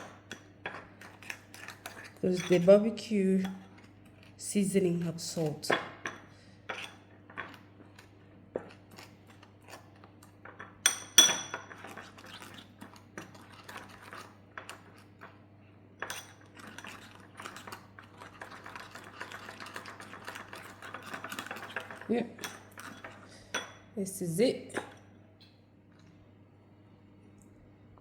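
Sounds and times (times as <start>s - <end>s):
spoon scraping a bowl: 0.0s - 4.4s, 5.2s - 10.0s, 10.9s - 15.1s, 16.0s - 23.8s.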